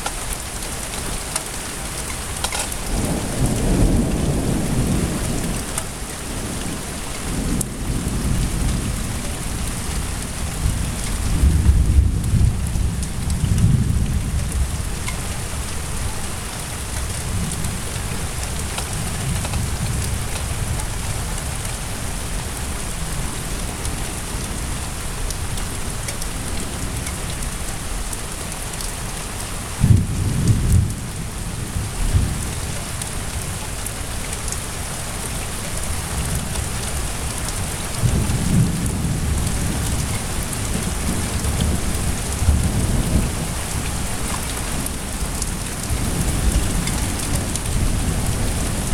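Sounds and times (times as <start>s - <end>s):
heavy rain: 0.0s - 48.9s
deep rolling thunder: 2.5s - 16.2s, 29.8s - 32.7s, 36.1s - 48.9s.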